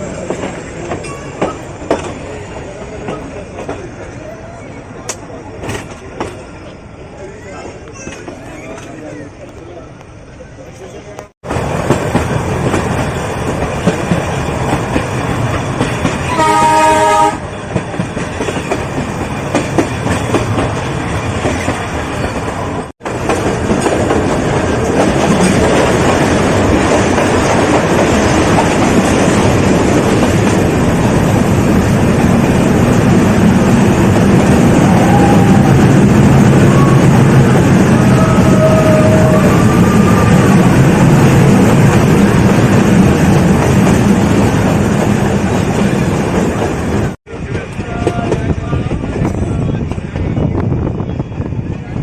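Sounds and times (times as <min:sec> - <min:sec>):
train wheels clickety-clack: 0:00.0 - 0:04.3, 0:05.0 - 0:06.8, 0:11.5 - 0:31.2, 0:41.3 - 0:50.7
train horn: 0:16.2 - 0:17.5.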